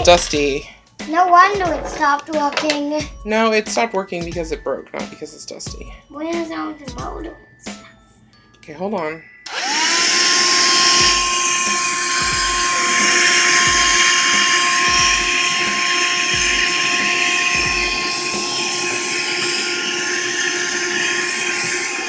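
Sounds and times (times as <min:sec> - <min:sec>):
vacuum cleaner motor whining: 0:09.5 - 0:22.0.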